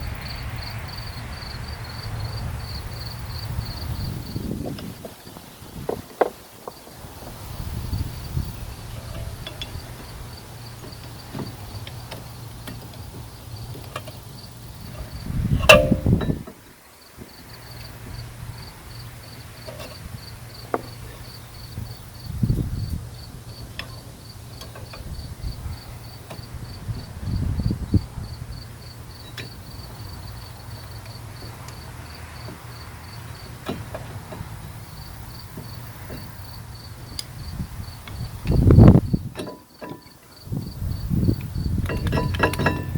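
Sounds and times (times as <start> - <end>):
insects chirping: 0.0 - 42.9
thumps and knocks: 14.8 - 16.6, 41.8 - 42.9.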